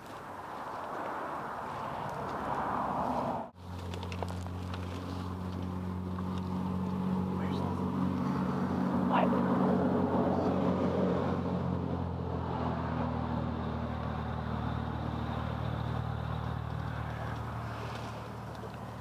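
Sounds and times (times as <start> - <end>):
vehicle engine running: 3.6 - 10.8, 13.1 - 19.0.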